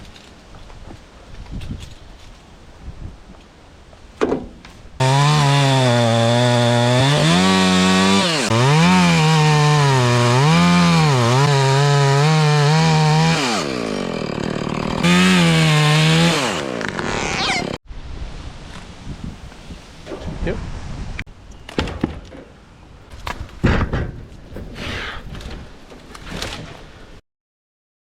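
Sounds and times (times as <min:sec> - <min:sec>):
chainsaw cutting wood: 0:05.0 - 0:17.8.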